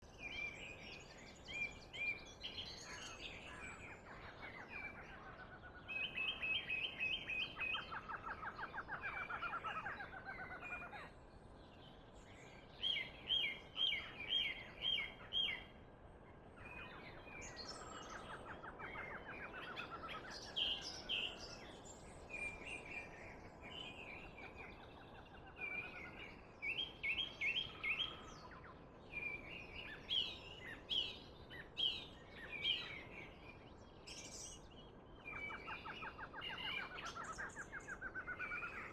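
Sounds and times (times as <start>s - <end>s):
songbirds singing: 0.0s - 38.9s.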